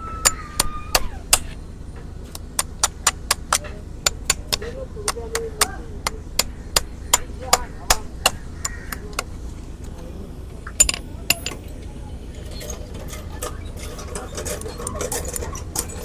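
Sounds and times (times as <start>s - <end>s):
hammer striking hoof: 2.3s - 9.2s.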